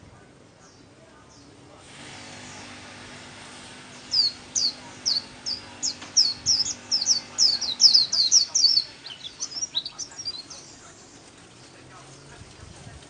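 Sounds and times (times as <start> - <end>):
bird singing high notes: 3.8 - 10.7.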